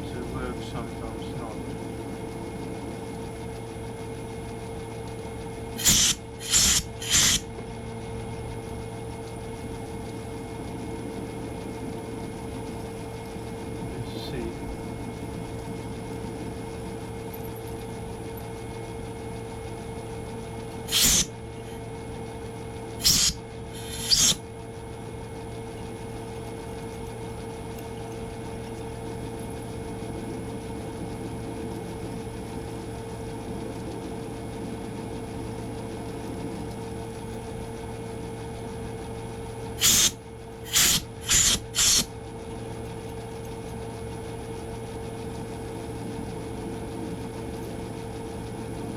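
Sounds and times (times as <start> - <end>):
metal lathe running: 5.8 - 7.6, 20.8 - 21.8, 23.0 - 24.4, 39.8 - 42.1.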